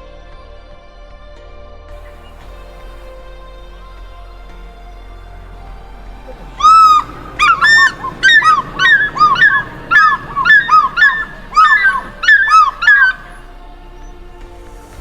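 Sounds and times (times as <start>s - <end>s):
faint background music: 0.0s - 15.0s
bird calling loudly: 5.7s - 14.2s.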